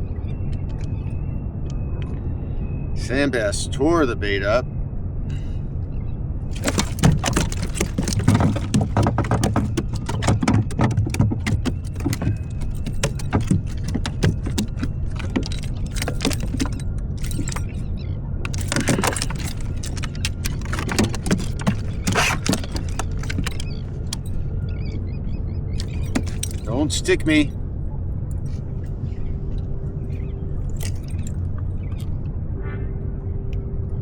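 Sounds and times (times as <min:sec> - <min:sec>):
metal rig rattling and clicking: 0:06.5 - 0:24.4, 0:25.7 - 0:27.4, 0:30.7 - 0:32.1
boat motor idling: 0:06.5 - 0:25.0.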